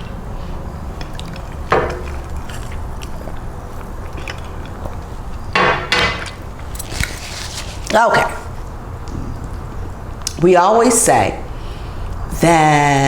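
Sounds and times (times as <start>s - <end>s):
swallowing and chewing: 0.0s - 5.5s
steady low hum: 0.0s - 13.0s.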